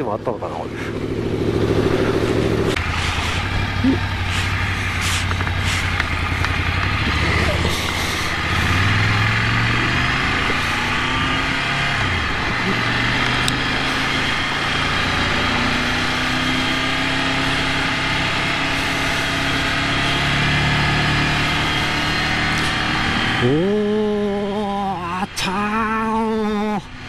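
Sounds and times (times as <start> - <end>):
motorcycle engine running: 0.0 - 27.0
wind noise: 12.0 - 13.3.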